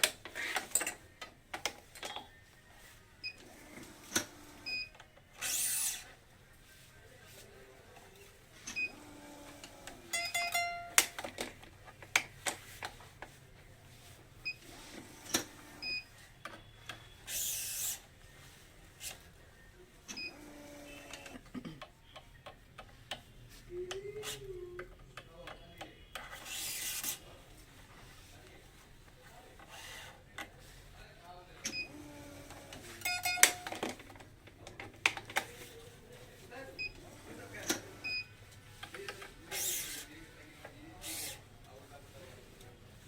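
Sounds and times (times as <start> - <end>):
clicks and taps of tools: 10.2 - 13.4, 33.1 - 35.5.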